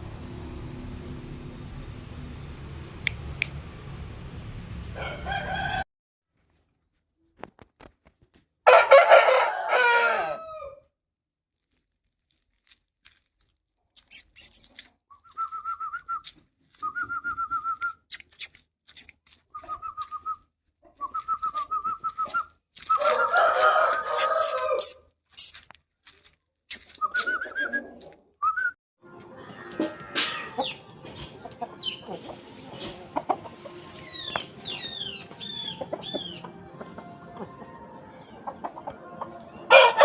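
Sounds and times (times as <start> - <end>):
rooster crowing: 5.0 - 5.8, 8.7 - 10.8, 22.9 - 25.0, 29.3 - 30.8, 39.6 - 40.0
chickens trilling calls: 20.8 - 25.0, 29.3 - 40.0.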